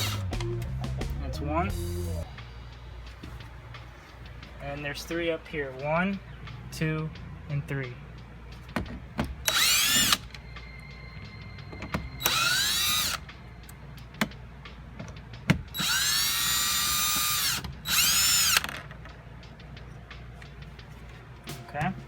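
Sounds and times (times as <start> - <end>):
electric screwdriver whirring: 0.0 - 0.3, 9.5 - 10.3, 12.2 - 13.2, 15.8 - 18.8.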